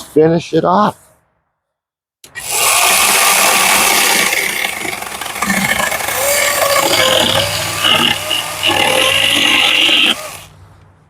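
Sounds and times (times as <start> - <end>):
electric chainsaw cutting log: 2.3 - 10.5.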